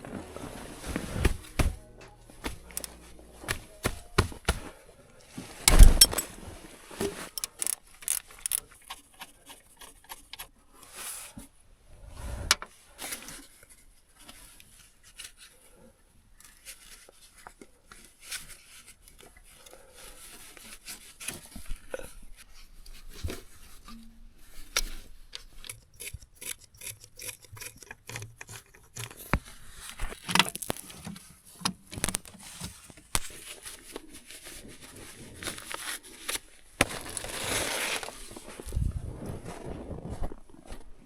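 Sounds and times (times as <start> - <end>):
hard objects clicking and scraping: 2.4 - 4.5, 5.7 - 6.3, 7.1 - 10.5, 24.7 - 32.4.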